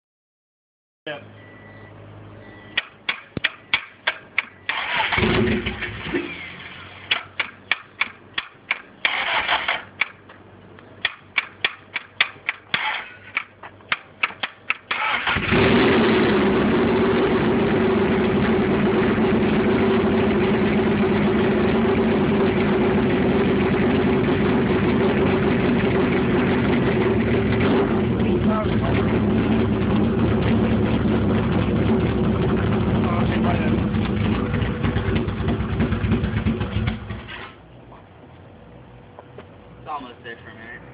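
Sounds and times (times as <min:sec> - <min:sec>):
engine idling: 0:01.4 - 0:40.9
engine cranking: 0:02.8 - 0:06.5, 0:07.1 - 0:10.2, 0:11.0 - 0:16.2, 0:28.7 - 0:37.6.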